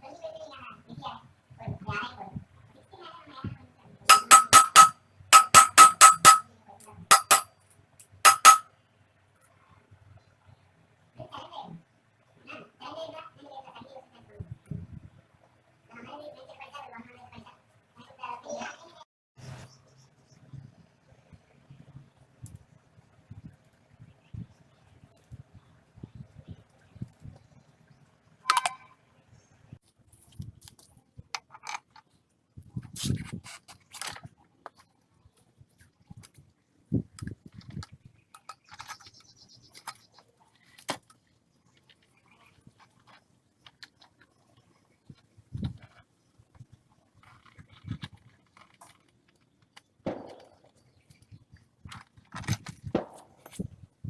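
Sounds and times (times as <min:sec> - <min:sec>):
ringing metallic strike: 0:04.1 - 0:06.4, 0:07.1 - 0:07.4, 0:08.3 - 0:08.6
metal tools clinking and scraping: 0:04.1 - 0:08.6.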